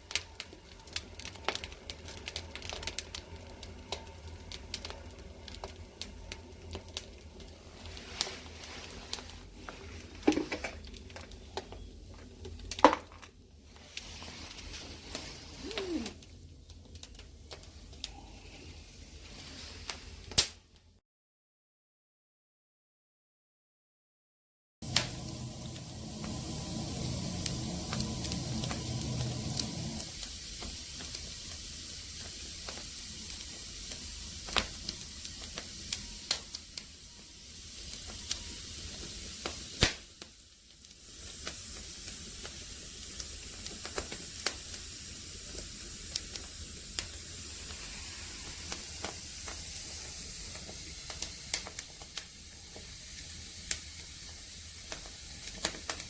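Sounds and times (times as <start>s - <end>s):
firewood burning and hissing: 0.0s - 20.8s, 24.8s - 56.0s
fire crackles and pops: 0.0s - 20.9s, 24.8s - 56.0s
low rumble: 24.8s - 30.1s.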